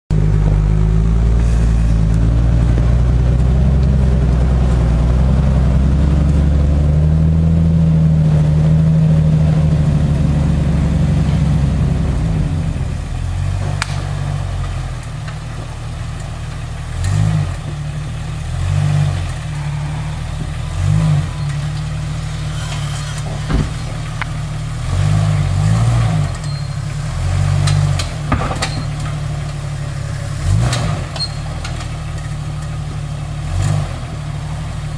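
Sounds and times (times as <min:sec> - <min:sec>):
car engine revving: 0:00.1 - 0:34.9
sharp knocks: 0:23.2 - 0:24.4, 0:27.7 - 0:29.2.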